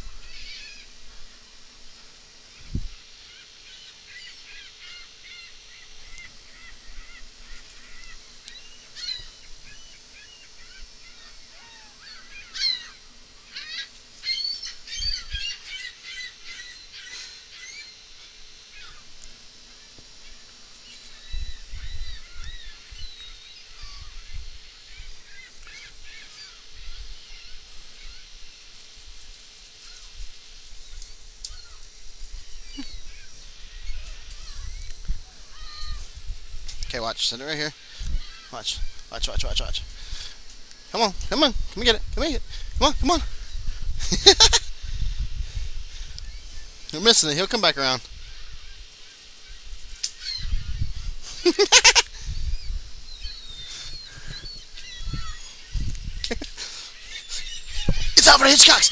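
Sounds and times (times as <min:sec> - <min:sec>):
gulls squawking: 0:02.5 - 0:19.1, 0:41.0 - 0:44.8, 0:46.0 - 0:58.9.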